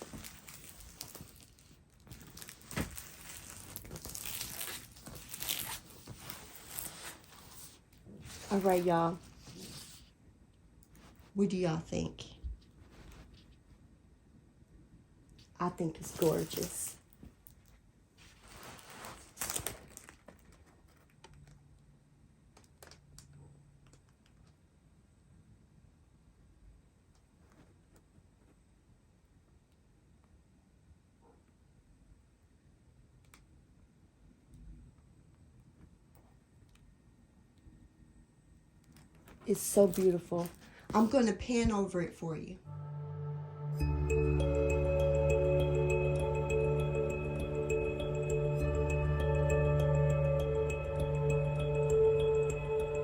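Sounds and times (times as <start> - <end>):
plastic film crinkling: 0.0 - 10.1, 15.9 - 21.4, 38.9 - 41.3
canvas rustling: 0.0 - 10.2, 15.9 - 20.9, 39.2 - 41.4.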